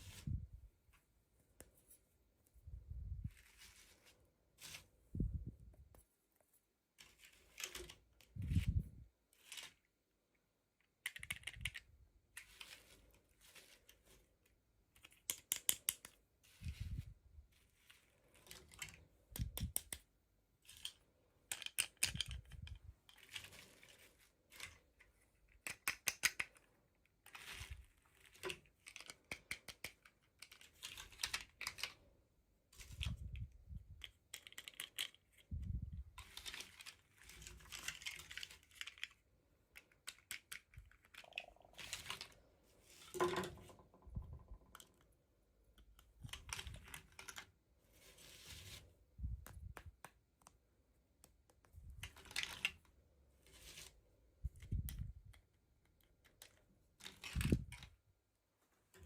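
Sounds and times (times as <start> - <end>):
plastic packaging clicks and taps: 49.3 - 52.7.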